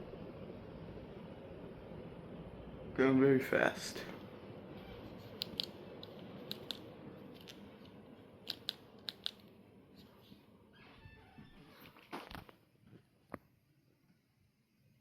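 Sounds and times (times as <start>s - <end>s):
ceiling fan rushing: 0.0s - 12.9s
sharp clicks: 5.4s - 7.6s, 8.5s - 9.5s.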